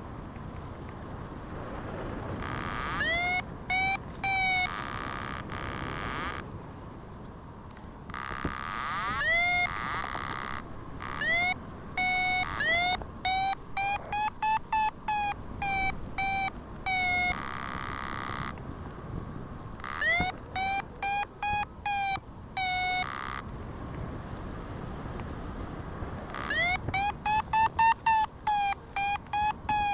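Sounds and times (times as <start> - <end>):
variometer beeping: 8.2 - 18.6, 19.8 - 23.4, 26.3 - 29.9.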